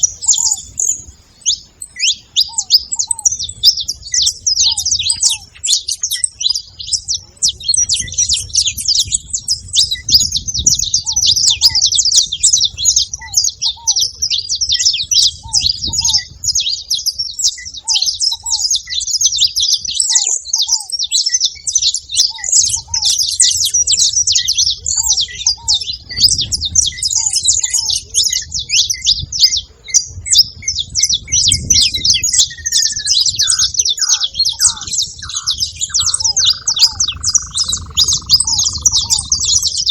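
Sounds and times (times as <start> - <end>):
finch chirping and trilling: 0.0 - 39.9
short lower bird notes: 33.0 - 39.7.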